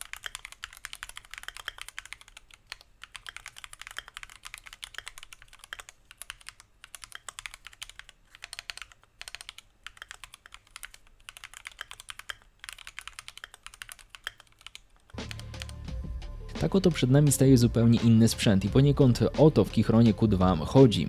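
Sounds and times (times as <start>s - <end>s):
mechanical keyboard typing: 0.0s - 15.8s.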